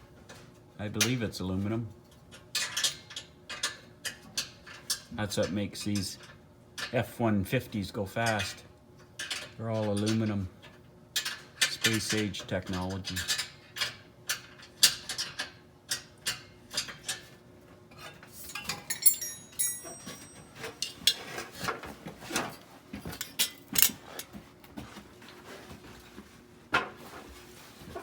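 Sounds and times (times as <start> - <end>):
wrench clinking on metal clamps: 18.0 - 21.4, 23.1 - 24.0.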